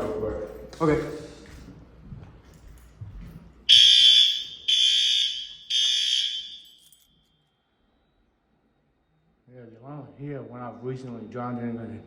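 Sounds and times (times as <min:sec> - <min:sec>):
smoke alarm beeps: 0:03.7 - 0:07.0.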